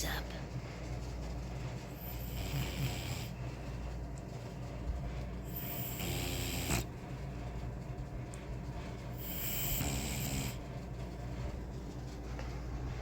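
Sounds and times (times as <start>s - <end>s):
dog snoring: 1.9s - 3.4s, 5.4s - 7.0s, 9.1s - 10.7s.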